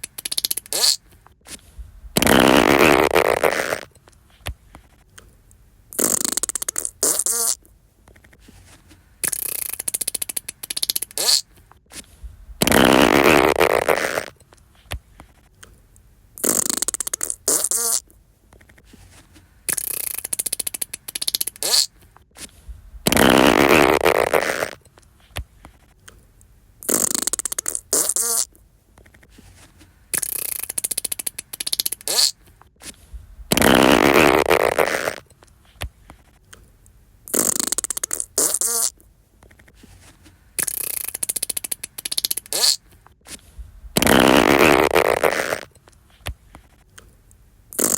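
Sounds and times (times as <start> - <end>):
fart sound effects: 0.2 - 1.0, 2.1 - 3.9, 5.9 - 7.6, 9.2 - 11.5, 12.6 - 14.4, 16.4 - 18.1, 19.7 - 22.0, 23.0 - 24.8, 26.8 - 28.5, 30.2 - 32.4, 33.5 - 35.3, 37.3 - 39.0, 40.6 - 42.8, 43.9 - 45.7.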